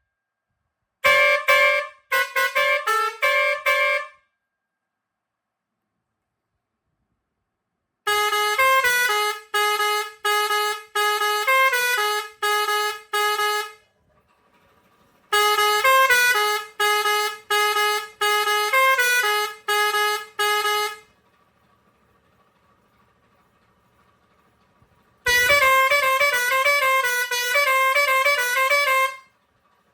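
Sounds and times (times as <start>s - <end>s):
air horn playing a tune: 1.0s - 4.2s, 8.1s - 13.9s, 15.3s - 21.1s, 25.3s - 29.3s.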